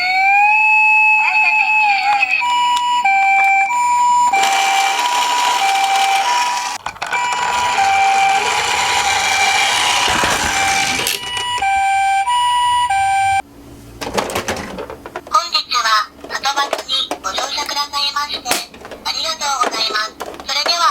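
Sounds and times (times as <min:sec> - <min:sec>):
toy two-tone siren: 0:00.0 - 0:13.4.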